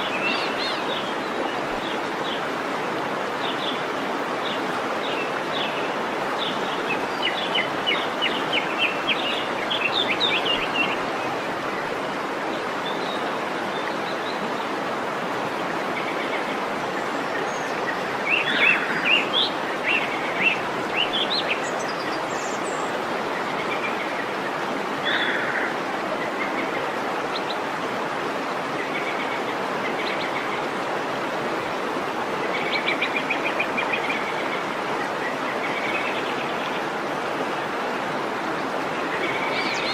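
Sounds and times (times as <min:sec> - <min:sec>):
waterfall rushing: 0:00.0 - 0:39.9
birds chirping and trilling: 0:15.7 - 0:27.7, 0:38.9 - 0:39.9.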